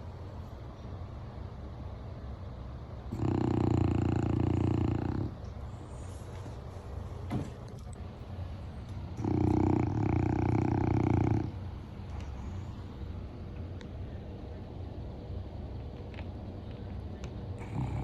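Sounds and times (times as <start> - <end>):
dog snoring: 3.1 - 6.1, 9.2 - 12.7, 17.6 - 18.0
low rumble of breathing: 3.1 - 18.0.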